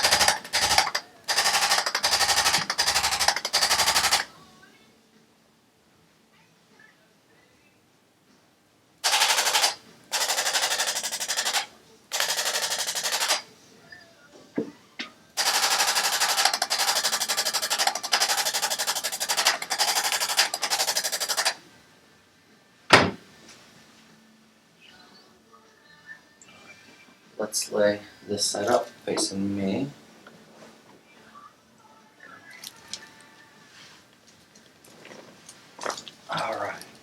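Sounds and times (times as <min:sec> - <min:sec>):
electric hammer tool hammering: 0:00.0 - 0:04.3, 0:09.0 - 0:13.4, 0:15.4 - 0:21.6.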